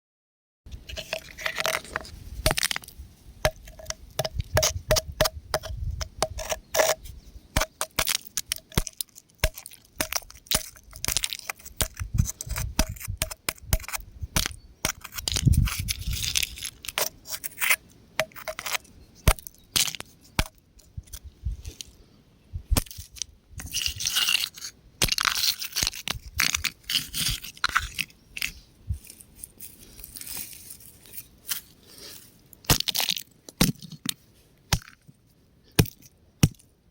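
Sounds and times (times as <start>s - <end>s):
rock crumbling and cracking: 1.1s - 7.0s, 7.6s - 17.6s, 22.7s - 31.8s, 32.5s - 36.8s.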